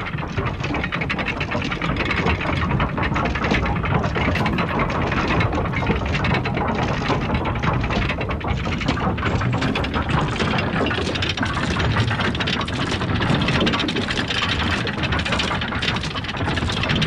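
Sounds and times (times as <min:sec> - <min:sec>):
drawbridge mechanism rattling: 0:04.3 - 0:17.0.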